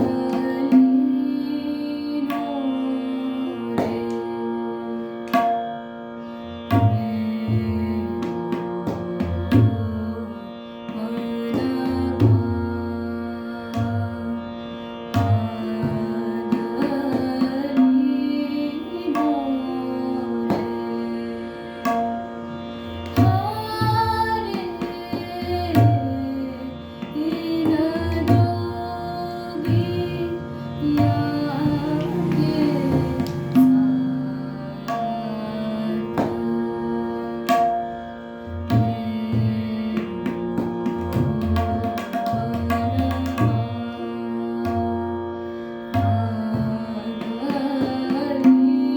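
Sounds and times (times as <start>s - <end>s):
tabla playing: 0.0s - 2.7s, 3.7s - 4.2s, 5.3s - 5.7s, 6.7s - 10.2s, 10.9s - 14.3s, 15.1s - 20.9s, 21.8s - 22.2s, 22.8s - 38.0s, 38.6s - 45.3s, 45.9s - 48.9s
woman singing: 0.0s - 5.6s, 6.7s - 37.8s, 38.7s - 48.9s
steady drone: 26.6s - 37.4s.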